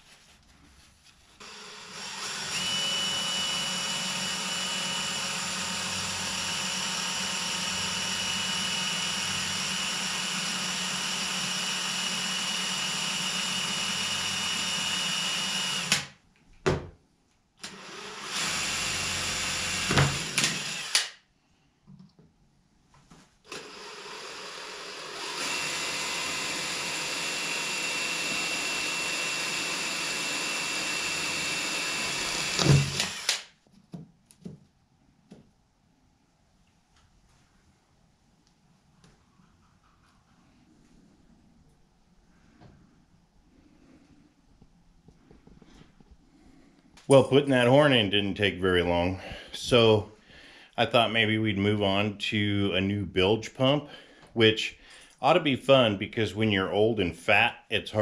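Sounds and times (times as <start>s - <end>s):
power tool whining: 1.4s - 16.1s, 17.6s - 21.2s, 23.5s - 33.5s.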